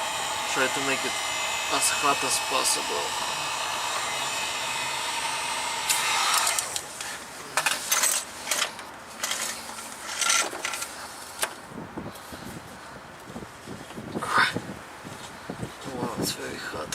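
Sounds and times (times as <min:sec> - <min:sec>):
heat gun blowing: 0:00.0 - 0:07.1
tools clicking and clattering: 0:07.6 - 0:11.5.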